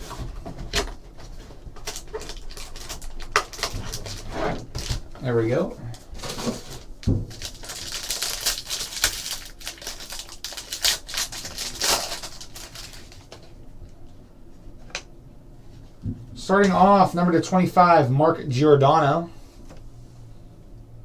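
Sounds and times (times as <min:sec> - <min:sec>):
card packaging crinkling: 0:00.8 - 0:05.1, 0:06.2 - 0:13.6.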